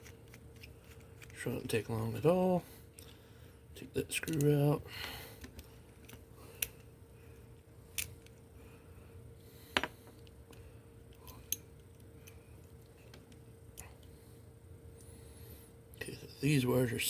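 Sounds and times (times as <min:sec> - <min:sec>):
faint steady hum: 0:00.0 - 0:17.0
plastic and metal parts clicking: 0:04.2 - 0:04.5.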